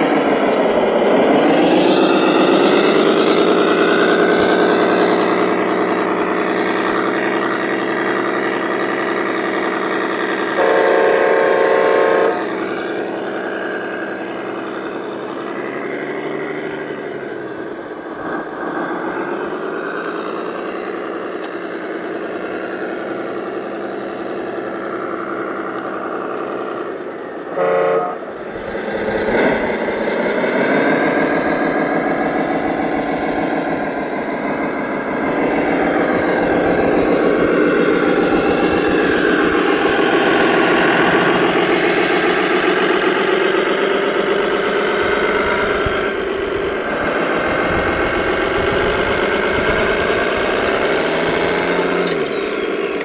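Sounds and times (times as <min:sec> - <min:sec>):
model truck engines revving: 0:00.0 - 0:53.0
horn blast: 0:10.6 - 0:12.5, 0:27.5 - 0:28.4.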